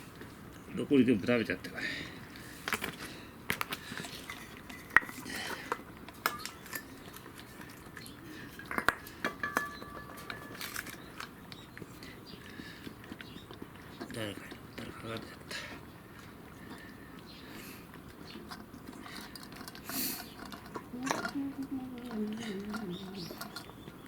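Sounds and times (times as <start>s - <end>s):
pet food dish clinking: 8.6s - 10.9s.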